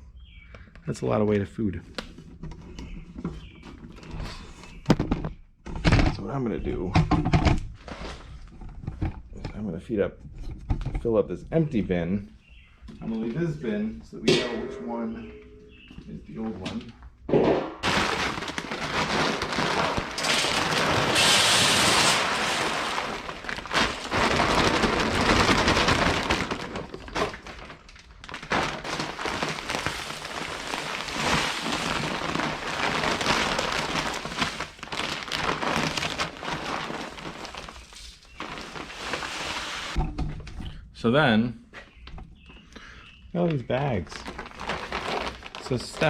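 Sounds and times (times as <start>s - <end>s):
dry feed pouring into a bin: 17.8s - 40.0s.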